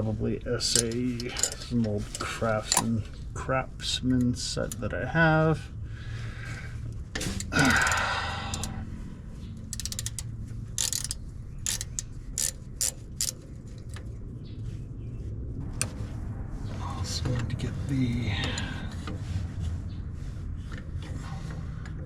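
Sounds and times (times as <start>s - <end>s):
steady low hum: 0.0s - 22.0s
metal tools clinking: 0.6s - 3.0s, 7.2s - 8.8s, 9.7s - 14.0s
socket wrench ratcheting: 0.7s - 3.0s, 7.2s - 8.8s, 9.7s - 14.0s.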